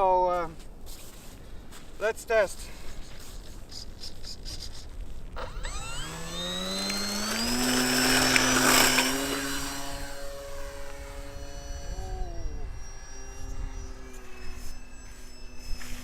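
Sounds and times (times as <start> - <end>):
model airplane motor whine: 5.4 - 16.0.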